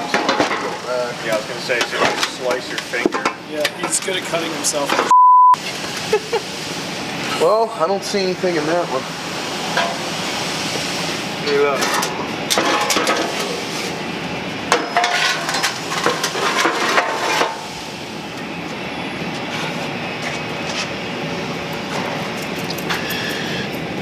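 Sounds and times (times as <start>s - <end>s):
metal clanks and knocks: 0.0s - 4.2s, 11.5s - 13.7s, 14.7s - 17.7s
steady background noise: 0.0s - 24.0s.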